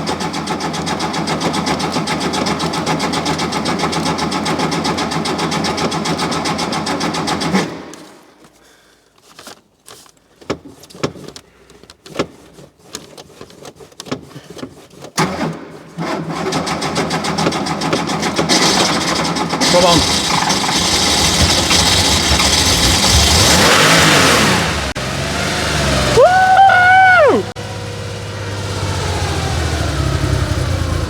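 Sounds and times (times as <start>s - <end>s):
engine cranking on starter motor: 0.0s - 8.3s, 15.0s - 31.0s.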